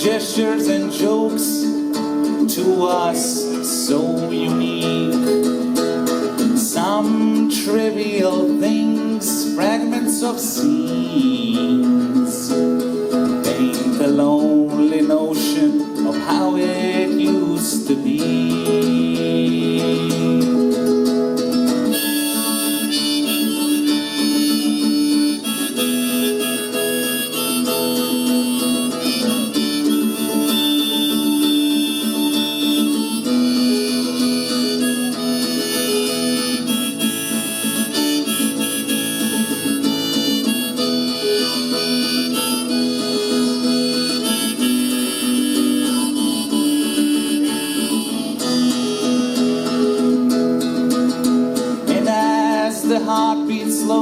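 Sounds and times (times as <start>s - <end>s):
strummed acoustic guitar: 0.0s - 54.0s
harmonica solo: 21.8s - 51.8s.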